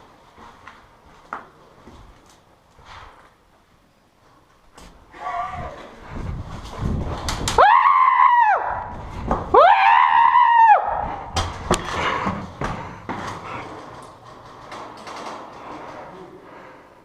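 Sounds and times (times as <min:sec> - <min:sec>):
person screaming: 0:05.1 - 0:05.9, 0:07.6 - 0:08.9, 0:09.5 - 0:11.2.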